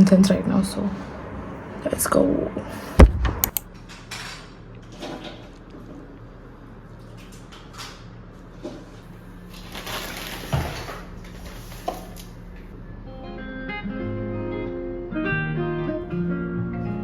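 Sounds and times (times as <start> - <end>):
low electrical hum: 0.0 - 17.0
guitar music: 13.0 - 17.0.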